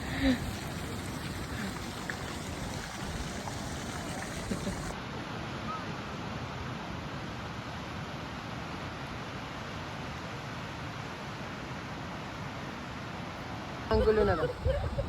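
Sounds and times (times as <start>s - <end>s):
faint voices: 0.0s - 5.0s
ocean surf washing on beach: 0.0s - 5.0s.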